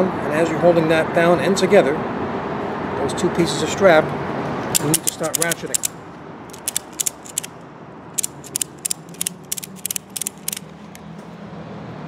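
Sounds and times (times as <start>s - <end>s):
ratchet strap clicking: 4.8s - 7.6s, 8.2s - 11.0s.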